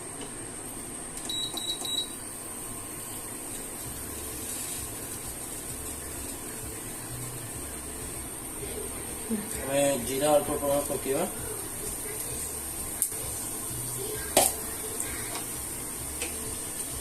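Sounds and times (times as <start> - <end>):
steady low hiss and hum: 0.0 - 17.0.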